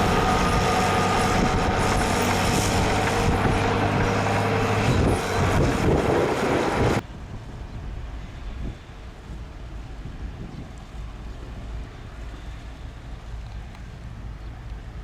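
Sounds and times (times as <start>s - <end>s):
heavy diesel machinery running: 0.0s - 7.0s.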